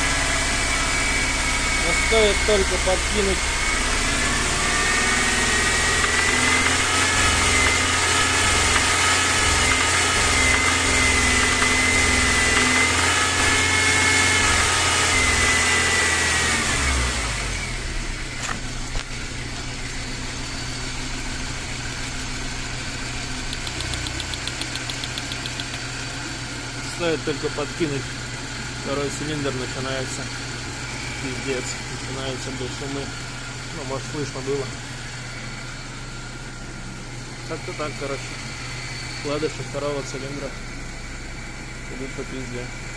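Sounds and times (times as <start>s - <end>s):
petrol engine revving and idling: 0.0s - 42.9s
light fast ticking: 23.5s - 25.9s.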